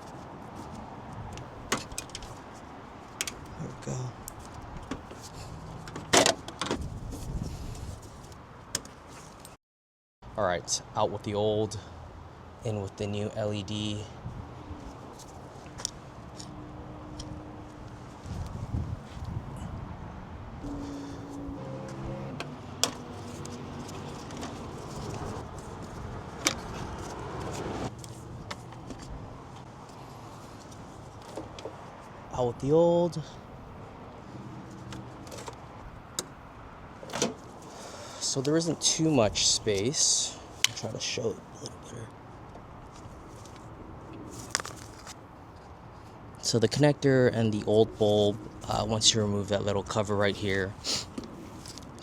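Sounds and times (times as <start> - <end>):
rustling: 23.0 - 29.2, 44.3 - 46.2.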